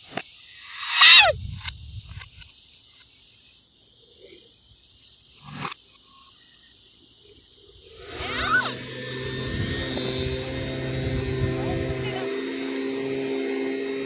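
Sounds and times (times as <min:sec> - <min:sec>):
steady high hiss: 0:00.0 - 0:14.0
background music sustained tones: 0:08.0 - 0:14.0.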